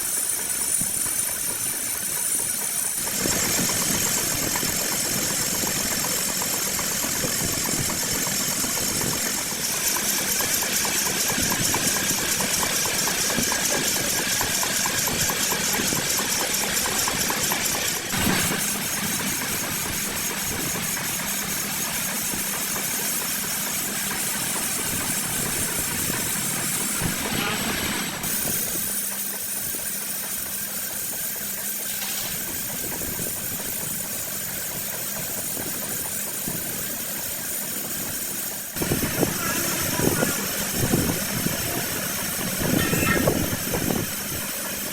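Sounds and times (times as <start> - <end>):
metal lathe cutting: 0.0 - 44.9
fast rattling chatter: 37.8 - 44.9
high steady whine: 38.8 - 44.9.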